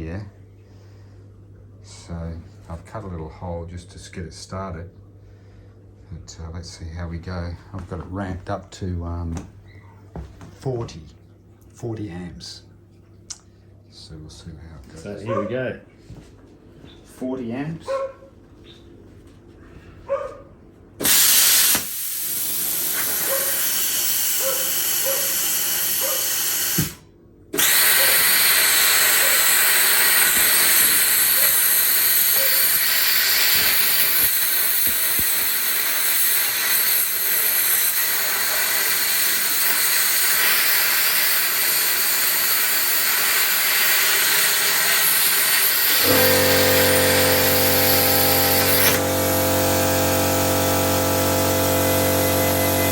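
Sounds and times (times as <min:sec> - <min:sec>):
plasma cutter hissing: 0:21.0 - 0:27.0, 0:27.6 - 0:52.9
low hum: 0:46.0 - 0:52.9.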